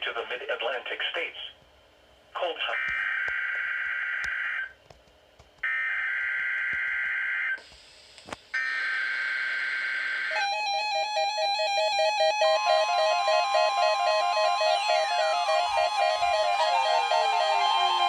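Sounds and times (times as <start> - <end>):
alternating beeping tones: 10.4 - 18.0.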